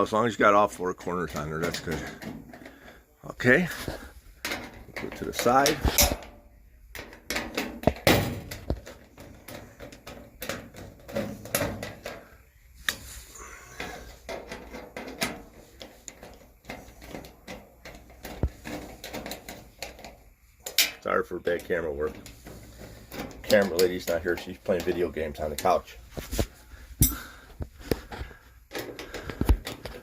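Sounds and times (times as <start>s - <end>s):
sheet metal clicks and knocks: 4.4s - 12.3s, 13.8s - 25.8s.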